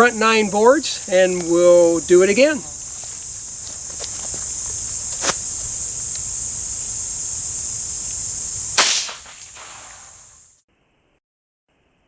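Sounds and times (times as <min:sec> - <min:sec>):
crickets chirping: 0:00.0 - 0:10.6.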